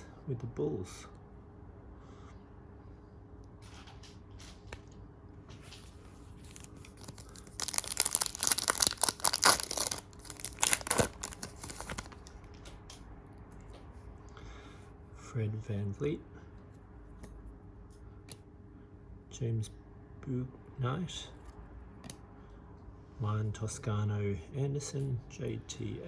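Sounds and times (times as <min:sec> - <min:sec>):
foil wrapper tearing and crinkling: 0:06.4 - 0:12.3.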